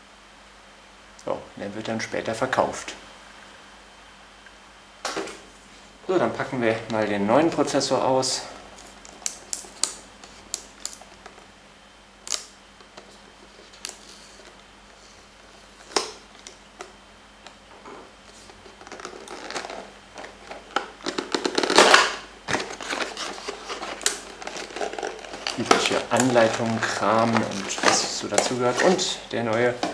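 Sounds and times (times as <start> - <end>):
packaging rustling and crinkling: 18.3 - 29.9.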